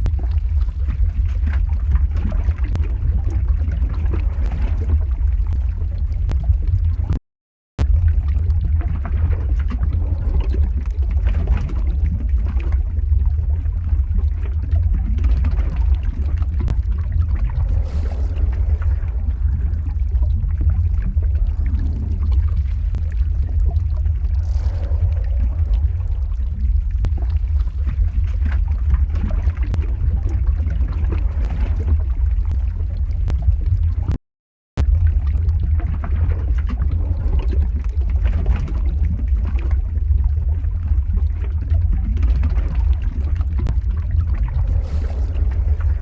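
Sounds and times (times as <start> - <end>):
lava flow deep rumble: 0.0 - 7.2, 7.8 - 34.2, 34.8 - 46.0
faint crackles: 7.8 - 34.2.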